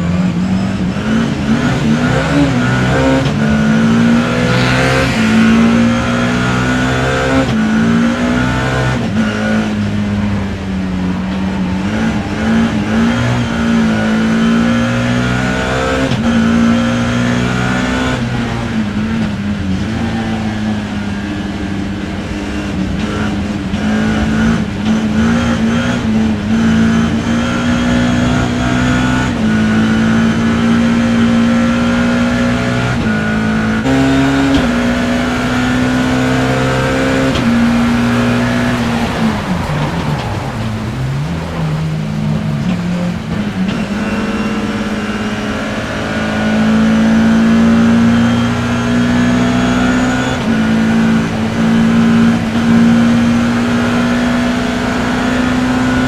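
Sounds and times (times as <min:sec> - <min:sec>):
race car engine revving: 0:00.0 - 0:56.0.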